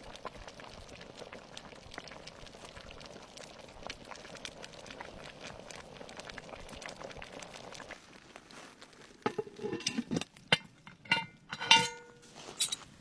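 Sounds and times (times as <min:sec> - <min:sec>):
pot bubbling at the boil: 0:00.0 - 0:13.0.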